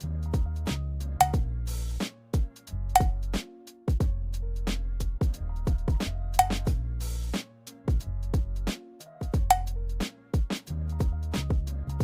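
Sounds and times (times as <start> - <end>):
music with drum beat and bass: 0.0 - 12.0.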